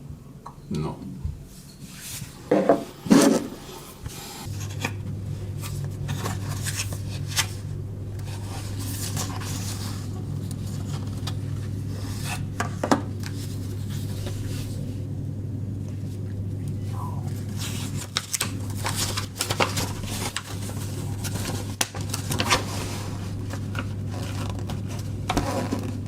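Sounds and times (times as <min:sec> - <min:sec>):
steady low hum: 0:00.0 - 0:26.0
objects rubbing: 0:01.5 - 0:14.8.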